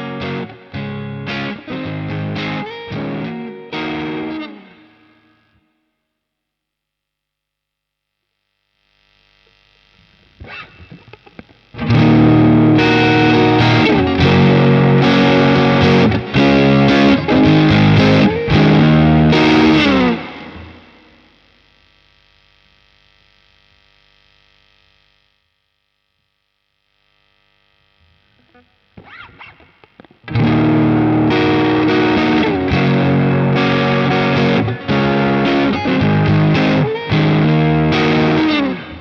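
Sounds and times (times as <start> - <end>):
overdriven guitar chords: 0.0 - 6.0, 9.5 - 25.3, 26.9 - 39.0
faint amp hum and hiss: 0.0 - 39.0
light electric guitar notes: 11.8 - 20.8, 30.3 - 39.0.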